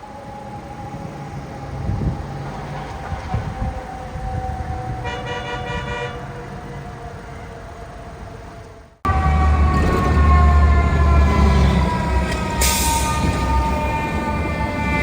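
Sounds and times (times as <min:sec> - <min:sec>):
fire truck siren: 0:00.0 - 0:15.0
air horn blast: 0:05.0 - 0:06.2
heavy engine rumble: 0:09.0 - 0:14.8.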